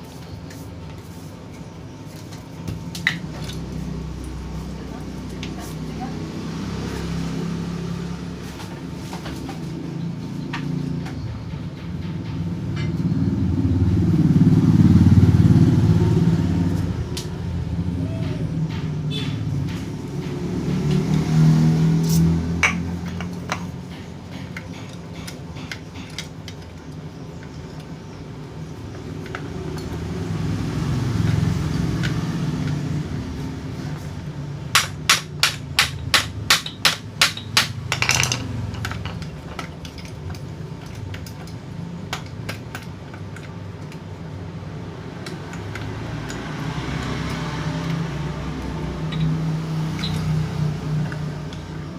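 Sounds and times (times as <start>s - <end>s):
passing road vehicles rumbling: 0.0s - 51.9s
metal parts clicking: 37.4s - 41.6s.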